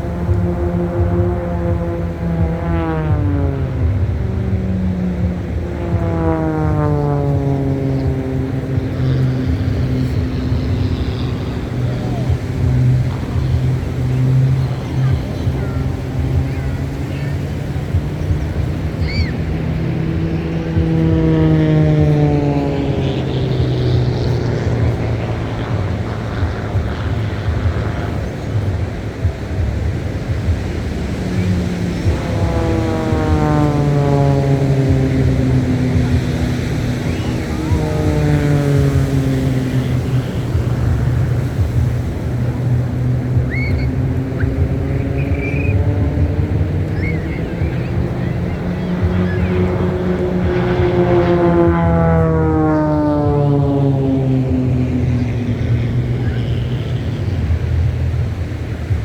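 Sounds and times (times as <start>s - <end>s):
propeller plane flying past: 0.0s - 59.0s.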